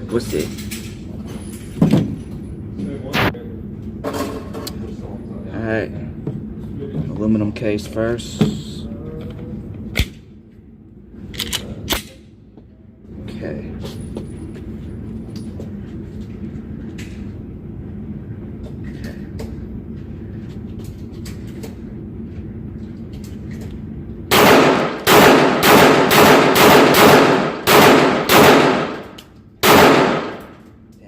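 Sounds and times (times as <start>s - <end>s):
pistol shots: 24.3s - 30.6s.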